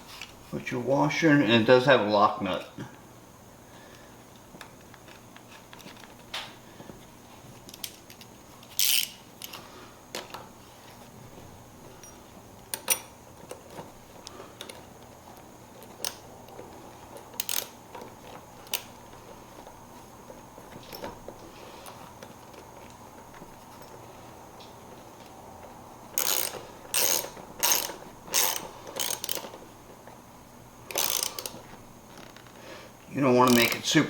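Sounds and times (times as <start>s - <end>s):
metallic hardware clicks and clinks: 12.0s - 13.8s, 26.2s - 29.6s, 30.9s - 31.6s, 33.4s - 34.0s.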